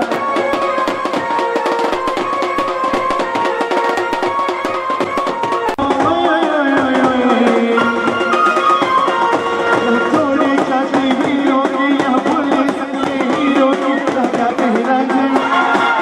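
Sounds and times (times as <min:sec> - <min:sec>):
music with fast drum beat: 0:00.0 - 0:16.0.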